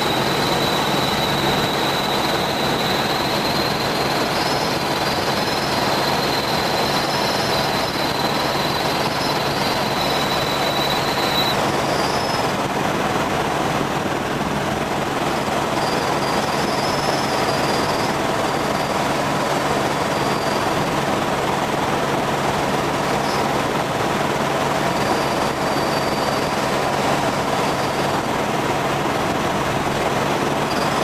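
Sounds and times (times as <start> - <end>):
faint high whine: 0.0 - 12.7, 15.4 - 21.1
helicopter rotor and engine drone: 0.0 - 31.0.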